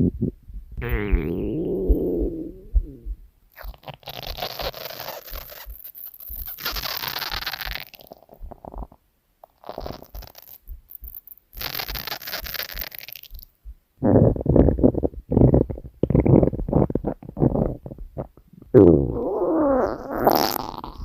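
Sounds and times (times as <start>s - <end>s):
stomach growling: 0.0s - 5.7s, 6.4s - 9.0s, 14.0s - 21.0s.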